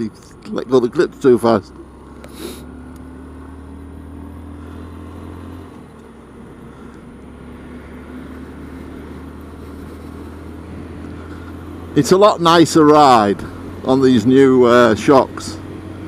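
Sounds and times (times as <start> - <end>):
wind and road noise: 0.0 - 16.0
motorcycle engine running: 4.6 - 16.0.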